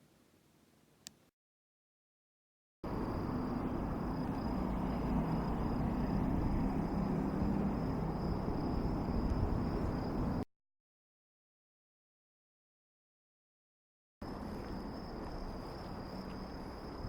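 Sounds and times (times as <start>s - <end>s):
insects trilling: 2.9s - 10.4s, 14.2s - 17.0s
low continuous rumble: 2.9s - 10.4s.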